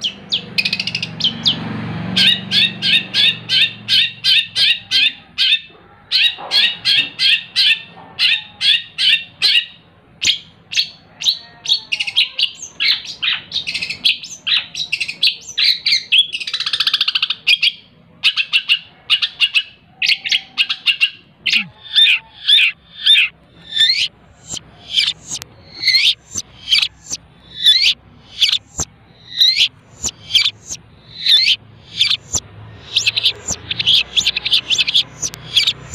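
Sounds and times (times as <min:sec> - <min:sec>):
shrike singing harsh chattering notes: 0:21.4 - 0:35.9
buzzy bird rattle: 0:23.6 - 0:28.8.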